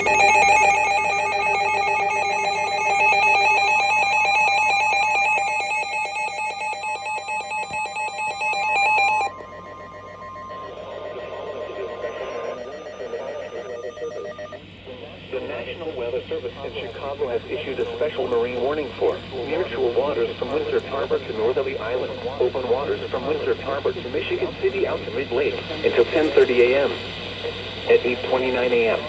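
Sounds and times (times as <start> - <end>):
faint steady tone: 0.0 - 14.6
pulsing electronic alarm: 0.0 - 14.7.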